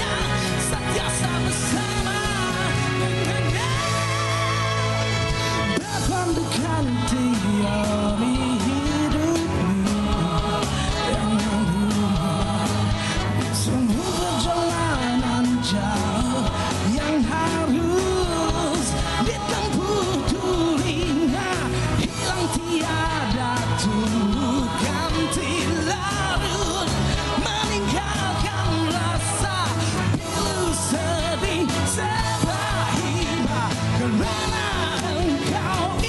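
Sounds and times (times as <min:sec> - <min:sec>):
live rock band playing: 0:00.0 - 0:36.0
man singing: 0:00.0 - 0:36.0.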